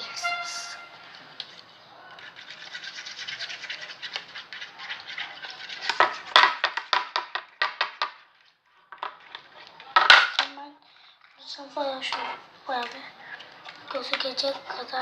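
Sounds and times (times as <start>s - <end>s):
slime stirred in a bowl: 1.5s - 8.0s.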